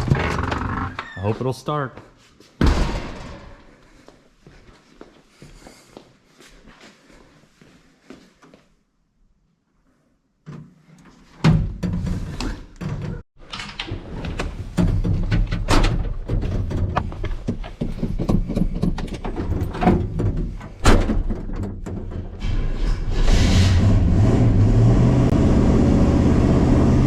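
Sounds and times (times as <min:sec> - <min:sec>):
truck engine starting and running: 0:22.4 - 0:27.0.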